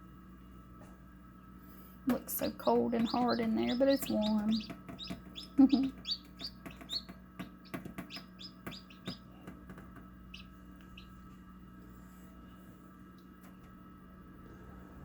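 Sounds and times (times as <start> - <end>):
low steady hum: 0.0 - 15.0
chicks peeping: 2.4 - 9.6, 10.3 - 11.3.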